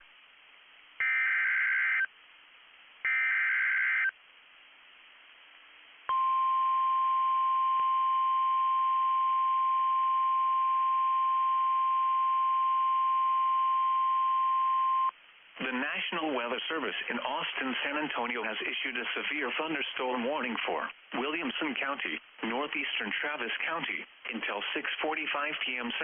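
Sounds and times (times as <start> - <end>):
faint receiver hiss: 15.1 - 26.0.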